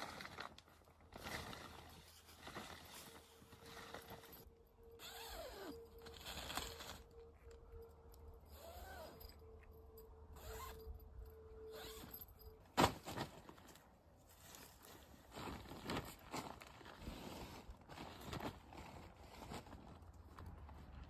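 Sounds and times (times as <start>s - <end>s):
objects rustling and scraping: 0.0s - 4.6s, 5.5s - 8.3s, 11.8s - 21.0s.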